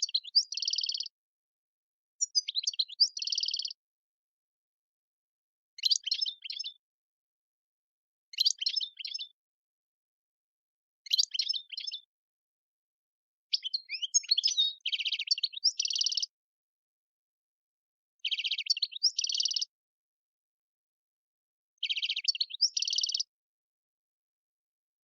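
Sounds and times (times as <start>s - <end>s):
bird twittering and trilling: 0.0s - 1.1s, 2.2s - 3.8s, 5.8s - 6.8s, 8.3s - 9.4s, 11.1s - 12.1s, 13.5s - 16.3s, 18.2s - 19.7s, 21.8s - 23.3s.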